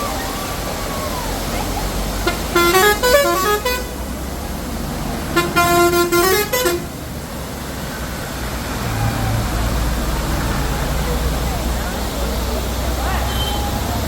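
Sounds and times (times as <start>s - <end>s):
rushing noise: 0.0s - 14.0s
musical vehicle horn tune: 2.2s - 4.0s, 5.4s - 6.9s.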